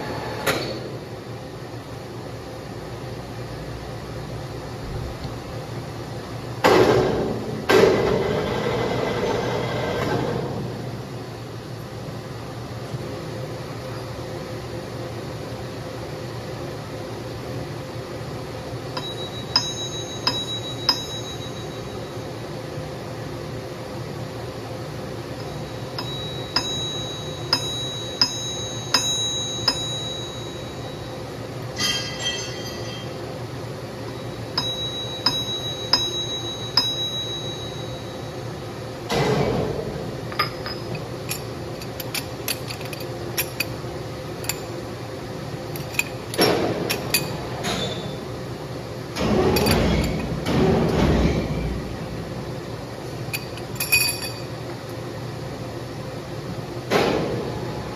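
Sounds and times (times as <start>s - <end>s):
sharp ringing metallic clinks: 19.0s - 22.2s, 25.4s - 33.2s, 34.1s - 38.4s, 53.4s - 54.6s.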